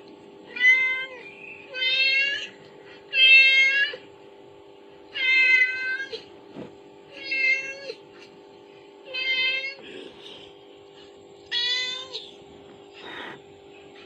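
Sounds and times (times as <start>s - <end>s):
cat meowing: 0.5s - 2.5s, 5.2s - 6.2s, 11.5s - 12.3s.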